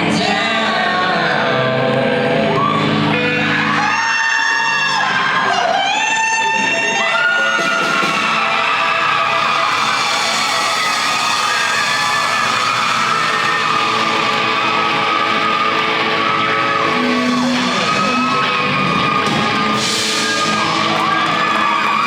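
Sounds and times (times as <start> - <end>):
audience yelling: 2.1 - 22.0
live rock band playing: 7.5 - 22.0.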